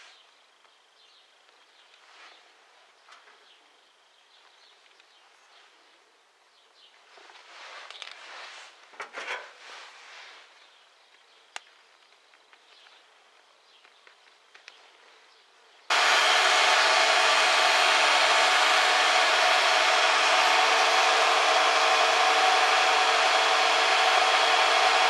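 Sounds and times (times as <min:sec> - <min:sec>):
electric power tool motor: 0:15.9 - 0:25.0.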